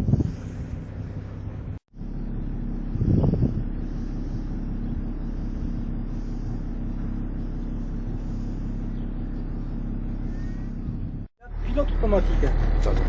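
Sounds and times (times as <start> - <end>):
boat engine idling: 0.9 - 13.0.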